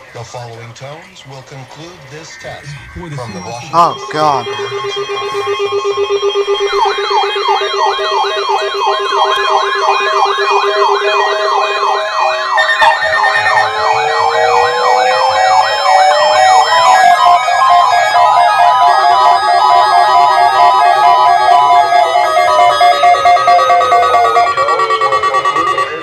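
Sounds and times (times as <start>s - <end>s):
steady alarm tones and beeping: 2.4s - 26.0s
siren tone sweeping upward: 2.8s - 26.0s
slowly rising tone: 12.8s - 16.8s.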